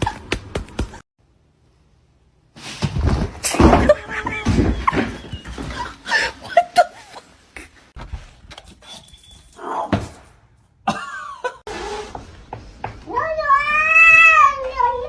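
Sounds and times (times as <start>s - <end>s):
knocks and rustles: 2.6s - 6.1s.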